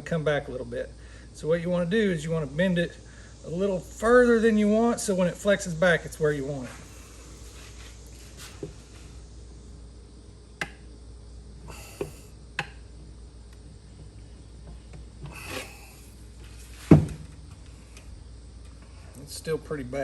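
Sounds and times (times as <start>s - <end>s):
heavy thump: 16.8s - 17.3s.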